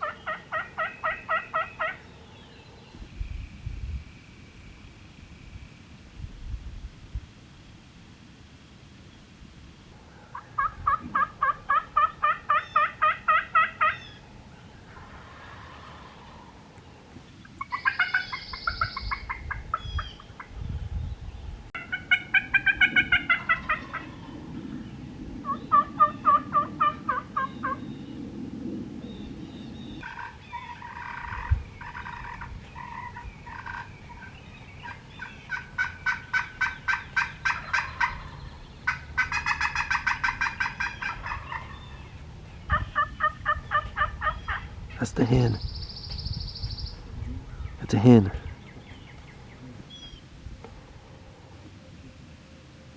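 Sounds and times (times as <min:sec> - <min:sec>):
wild turkeys gobbling: 0:00.0 - 0:02.1, 0:10.2 - 0:16.8, 0:17.4 - 0:20.5, 0:21.8 - 0:24.3, 0:25.4 - 0:27.8, 0:30.0 - 0:45.0.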